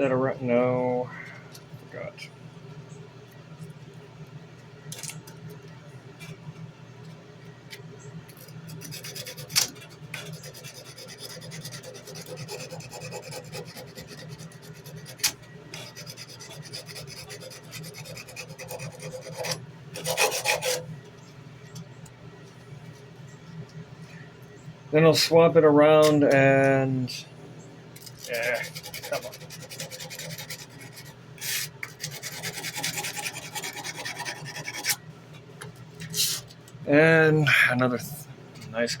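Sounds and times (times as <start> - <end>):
sandpaper rubbing on steel blade: 8.4 - 20.8, 28.2 - 35.0.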